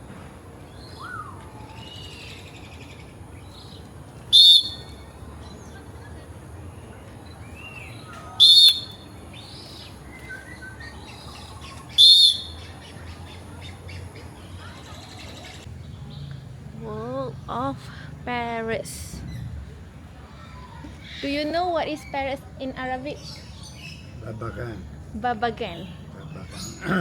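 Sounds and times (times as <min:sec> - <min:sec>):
birds chirping and whistling: 0:00.7 - 0:05.7, 0:07.3 - 0:13.3
loud high bird calls: 0:00.7 - 0:05.8, 0:07.6 - 0:14.0.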